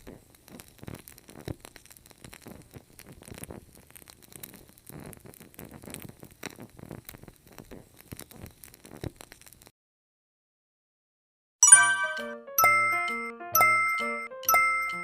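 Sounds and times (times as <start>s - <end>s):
candle crackling and sputtering: 0.0s - 9.7s.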